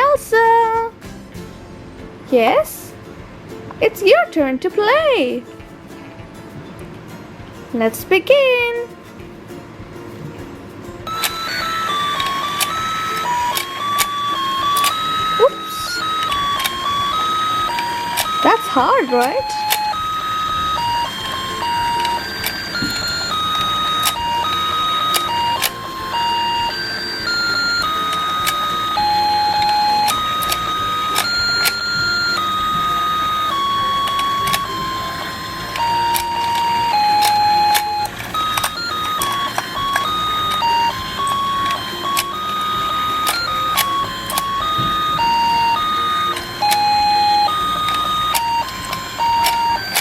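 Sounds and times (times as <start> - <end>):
electronic beeping tune: 11.0 - 50.0
toy motor whirring: 11.1 - 50.0.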